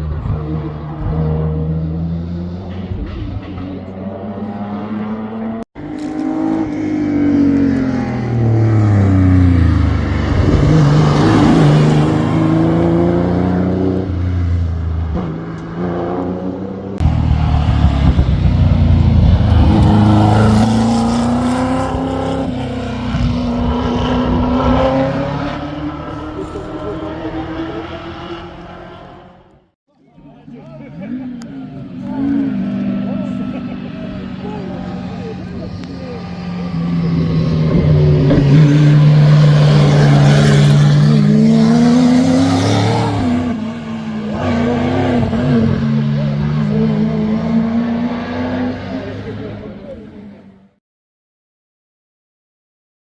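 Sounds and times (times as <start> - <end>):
racing car passing at speed: 0.0 - 29.6, 31.6 - 50.7
racing car accelerating: 0.0 - 29.7, 30.9 - 50.8.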